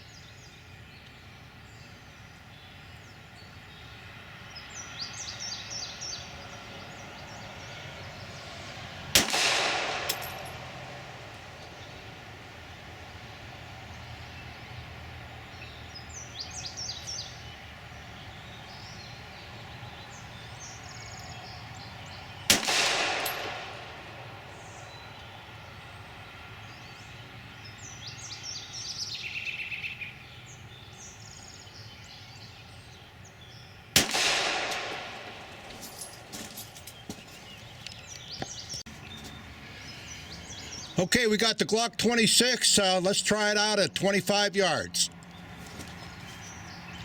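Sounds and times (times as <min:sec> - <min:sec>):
pistol shots with echo: 0:09.2 - 0:11.3, 0:22.5 - 0:24.6, 0:34.0 - 0:36.4
birds chirping faintly: 0:11.3 - 0:47.0.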